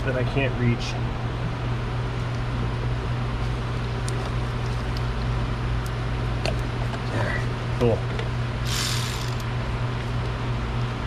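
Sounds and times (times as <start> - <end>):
mechanical fan hum: 0.0 - 11.0
hand tool clicks: 8.7 - 9.5.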